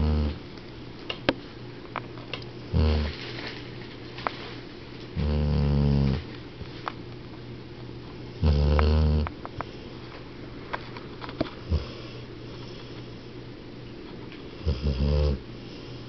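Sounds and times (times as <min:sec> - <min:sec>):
dog snoring: 0:00.0 - 0:00.4, 0:02.7 - 0:03.2, 0:05.2 - 0:06.3, 0:08.4 - 0:09.3, 0:11.6 - 0:12.8, 0:14.5 - 0:16.0.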